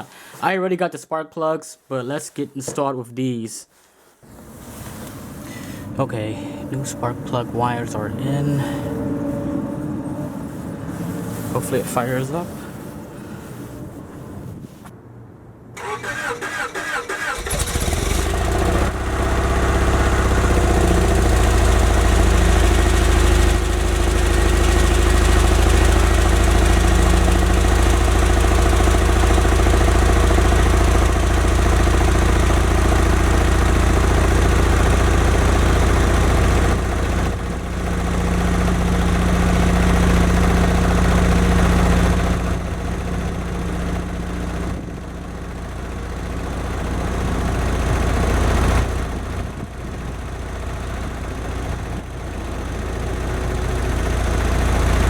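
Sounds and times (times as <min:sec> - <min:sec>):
car engine idling: 0:04.2 - 0:14.8, 0:15.8 - 0:55.0.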